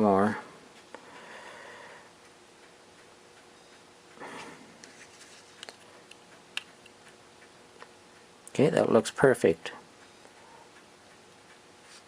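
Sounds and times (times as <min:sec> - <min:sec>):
soft rustle: 0:04.7 - 0:06.0.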